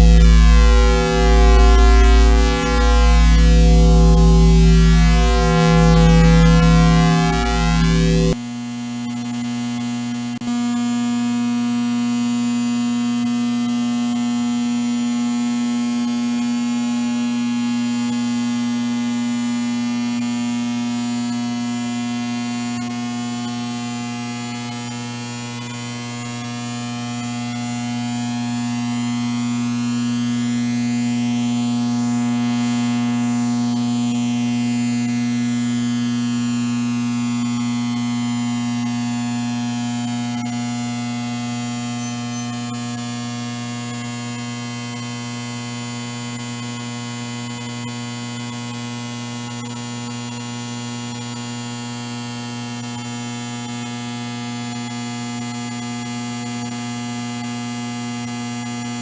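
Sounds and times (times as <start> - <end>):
electrical hum and buzz: 0.0 - 23.4.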